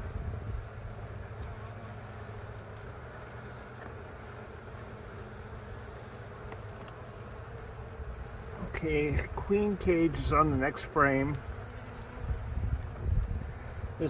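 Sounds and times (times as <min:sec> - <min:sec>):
honeybees buzzing: 0:00.0 - 0:14.0.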